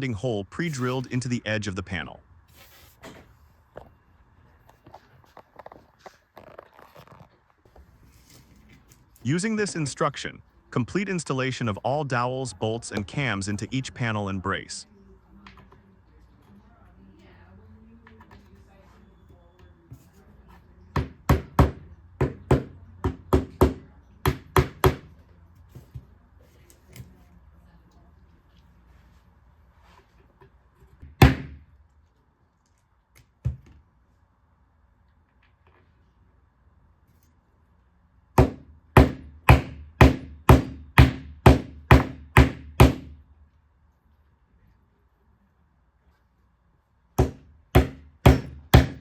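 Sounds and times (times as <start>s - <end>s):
hammer tapping wooden dowel: 38.4s - 43.1s, 47.2s - 49.0s.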